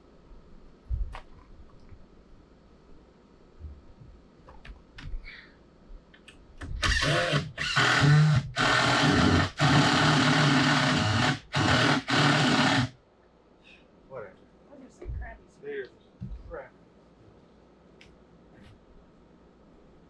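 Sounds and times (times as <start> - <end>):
power drill running: 6.8 - 13.0.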